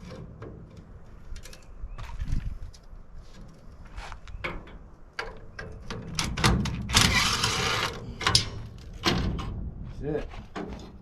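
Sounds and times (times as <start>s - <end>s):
metal parts clanking: 4.5s - 9.6s
harsh metal scrape: 6.9s - 8.8s.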